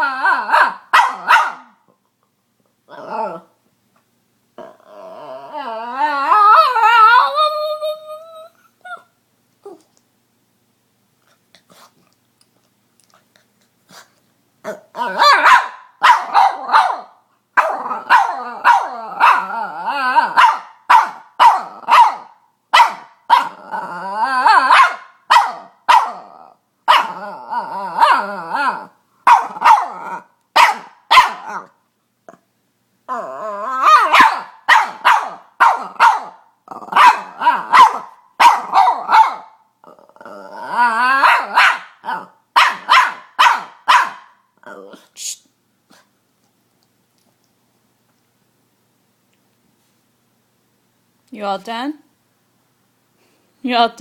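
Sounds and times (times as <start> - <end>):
dog barking and squealing: 0.0 - 1.8, 14.6 - 23.6, 24.2 - 26.3, 26.9 - 27.2, 27.9 - 31.8, 33.6 - 39.6, 40.9 - 45.0.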